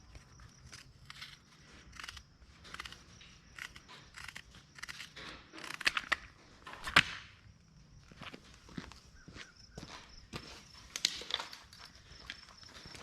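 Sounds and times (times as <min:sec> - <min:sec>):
crunching and clicking: 0:00.0 - 0:07.4, 0:10.0 - 0:13.0.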